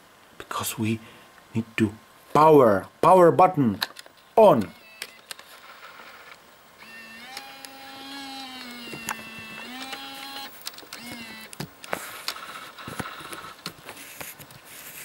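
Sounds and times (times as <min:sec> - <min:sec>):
small motor whirring: 0:04.7 - 0:15.0.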